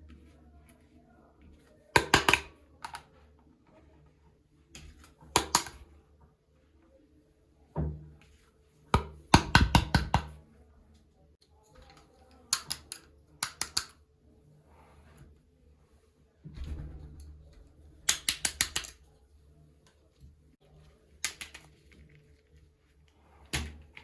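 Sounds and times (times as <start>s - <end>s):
plastic toy pieces clicking: 11.9s - 14.0s, 18.1s - 19.0s, 21.2s - 21.7s.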